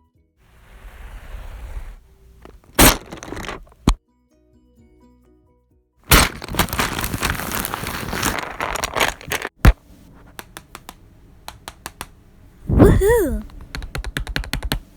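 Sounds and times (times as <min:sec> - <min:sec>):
loud crackling crunching noise: 0:00.7 - 0:04.0, 0:06.1 - 0:12.0
sharp crack: 0:06.1 - 0:13.4.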